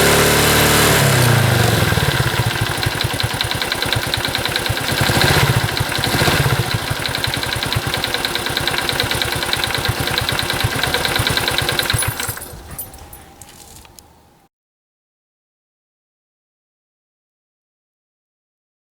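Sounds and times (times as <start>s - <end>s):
motorcycle engine idling: 0.0s - 14.1s.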